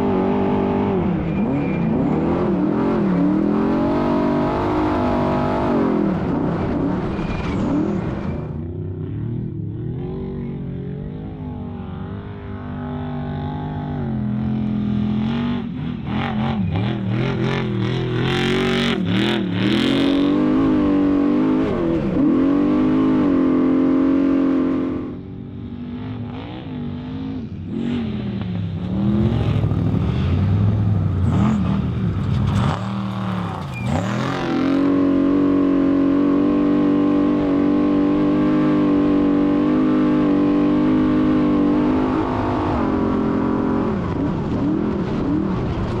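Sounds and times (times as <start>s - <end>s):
race truck engine revving: 0.0s - 8.6s, 27.7s - 46.0s.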